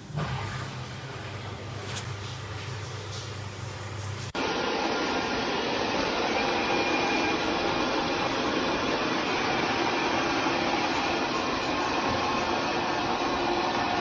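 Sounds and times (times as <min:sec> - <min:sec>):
vacuum motor running: 0:04.4 - 0:14.0.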